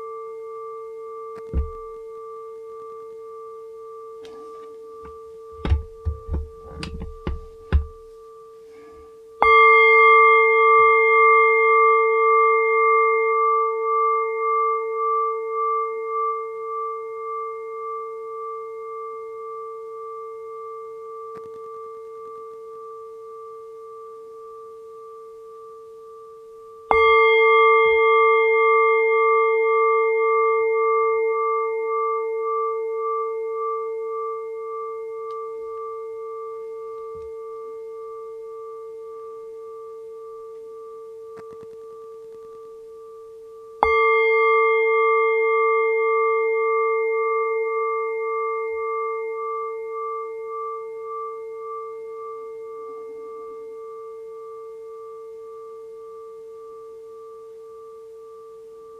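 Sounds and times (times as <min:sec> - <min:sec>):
meditation bell ringing: 0:00.0 - 0:58.9
short knocks: 0:01.6 - 0:01.9, 0:05.6 - 0:08.0.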